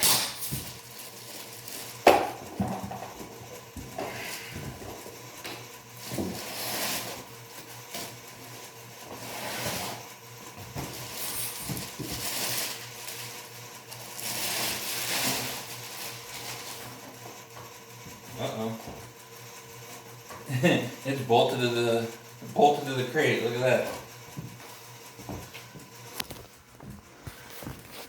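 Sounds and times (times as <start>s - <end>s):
packing material rustling: 0.4s - 2.1s, 11.0s - 16.8s.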